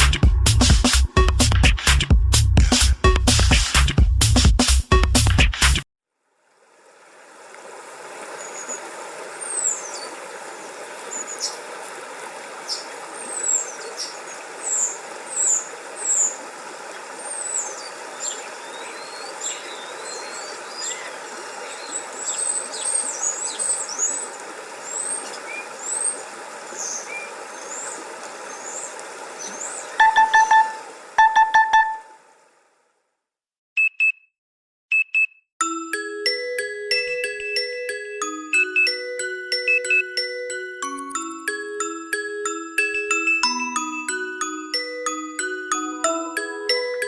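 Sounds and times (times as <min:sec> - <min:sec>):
birds chirping and twittering: 0:08.4 - 0:11.7, 0:12.7 - 0:32.1
short electronic beeps: 0:30.0 - 0:32.2.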